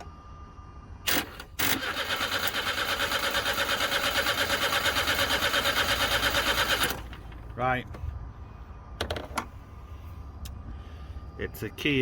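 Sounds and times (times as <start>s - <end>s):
starter motor cranking engine: 1.1s - 7.2s.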